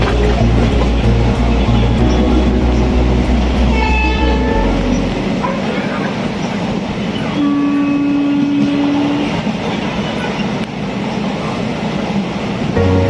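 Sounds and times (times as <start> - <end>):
low steady hum: 0.0 - 9.3
passenger train rolling: 0.0 - 13.0
train horn: 7.4 - 9.4.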